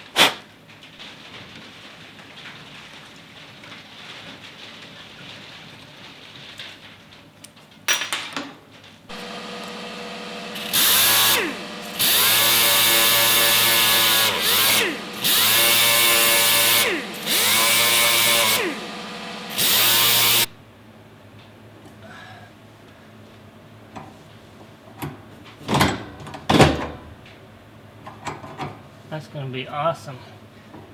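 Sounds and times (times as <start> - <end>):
power drill boring into metal: 9.1 - 20.5.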